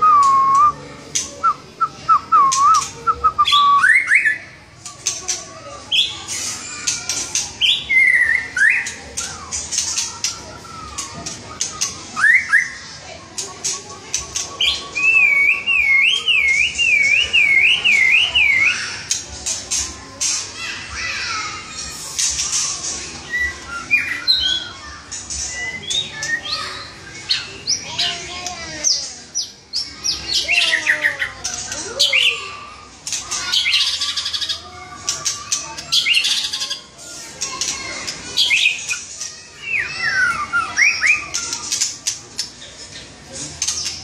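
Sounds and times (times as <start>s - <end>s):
bird singing whistled phrases: 0.0s - 0.8s, 1.4s - 4.4s, 12.2s - 12.8s, 14.6s - 18.8s, 23.2s - 24.8s, 39.6s - 41.4s.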